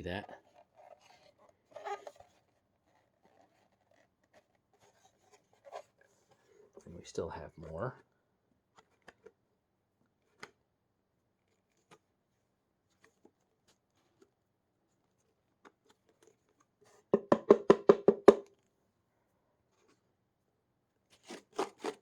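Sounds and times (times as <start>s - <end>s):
vacuum filter tapping on hard surface: 17.2s - 18.5s.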